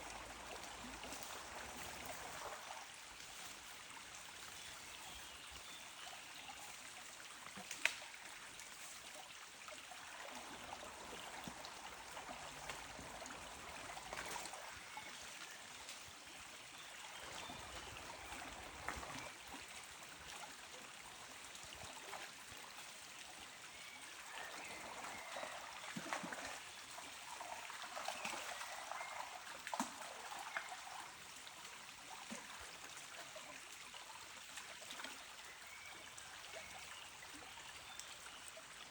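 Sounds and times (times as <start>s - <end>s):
trickling water: 0.0s - 38.9s
small splashes and clicks: 7.5s - 9.0s, 29.5s - 30.8s.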